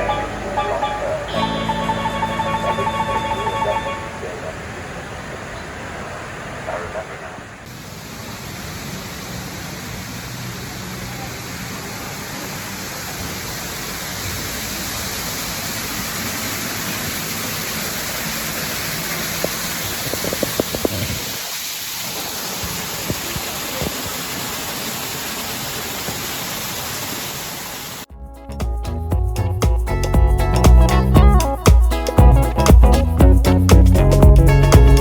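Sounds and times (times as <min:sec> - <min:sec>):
music: 0:00.0 - 0:04.2, 0:28.1 - 0:35.0.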